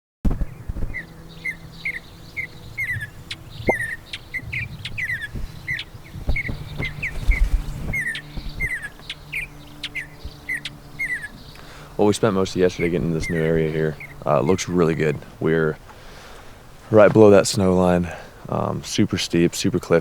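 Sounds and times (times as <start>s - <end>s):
low rumble: 0.3s - 15.8s
high bird calls: 0.4s - 17.3s
short falling chirps: 3.6s - 4.0s.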